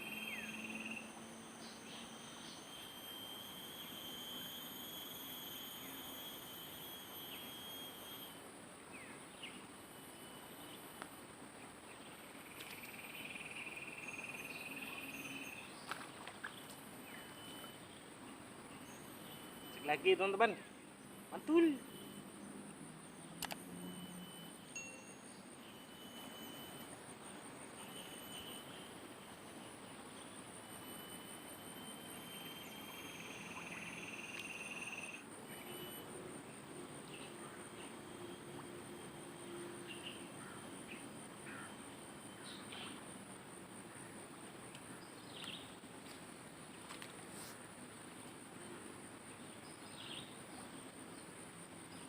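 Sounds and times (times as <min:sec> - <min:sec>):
thin high tones: 0:00.0 - 0:08.4, 0:13.3 - 0:15.7, 0:18.8 - 0:22.3, 0:23.7 - 0:29.8, 0:30.6 - 0:36.1
bird chirps: 0:00.0 - 0:10.8, 0:12.4 - 0:18.0, 0:30.2 - 0:36.0
high insect trill: 0:00.0 - 0:52.0
sharp double click: 0:23.4 - 0:23.7.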